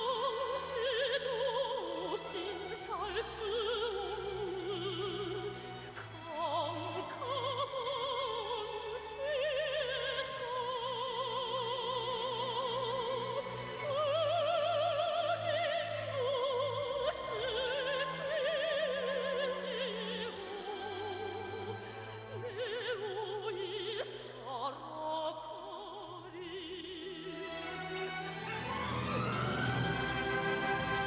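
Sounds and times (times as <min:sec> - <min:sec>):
operatic singing with vibrato: 0:00.0 - 0:31.0
orchestral accompaniment: 0:27.3 - 0:31.0.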